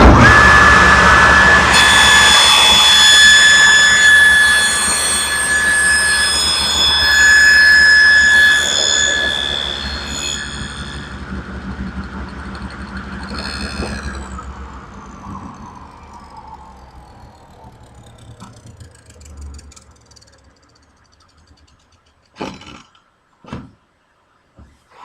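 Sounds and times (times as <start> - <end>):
table saw winding down: 0.0 - 22.7.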